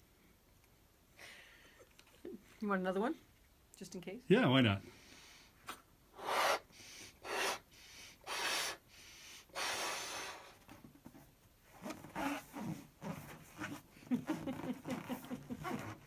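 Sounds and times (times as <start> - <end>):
breathy puffs of air: 4.9 - 10.6.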